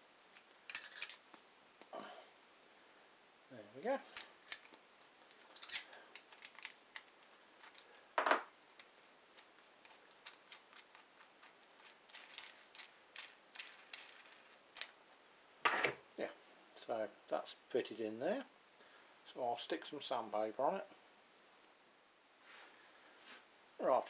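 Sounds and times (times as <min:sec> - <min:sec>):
bolt and nut clicking and rattling: 0:00.3 - 0:01.3, 0:04.1 - 0:15.4.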